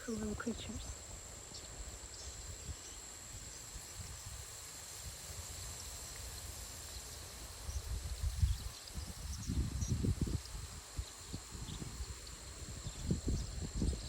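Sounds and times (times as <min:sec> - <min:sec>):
wind buffeting microphone: 0:07.6 - 0:14.0.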